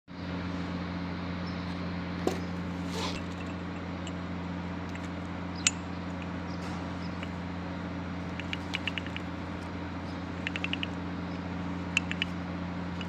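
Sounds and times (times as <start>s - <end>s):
low machine hum: 0.1s - 13.0s
sharp metallic clicks: 4.9s - 7.4s, 8.3s - 13.0s.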